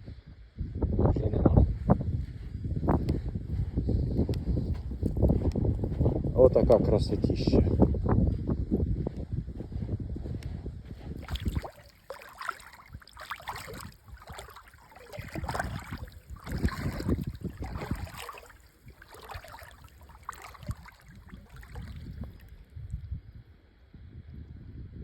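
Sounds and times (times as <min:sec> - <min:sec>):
river water lapping and sloshing: 0:11.2 - 0:22.7.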